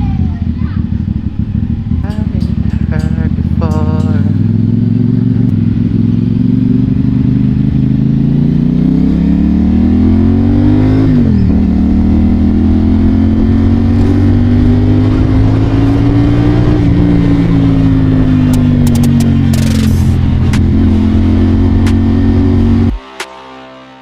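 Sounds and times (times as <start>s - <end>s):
motorcycle engine accelerating: 0.0s - 23.2s.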